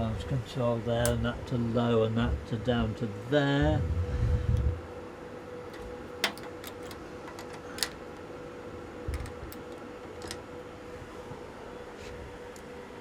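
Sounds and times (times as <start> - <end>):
switches clicking: 5.7 - 8.3.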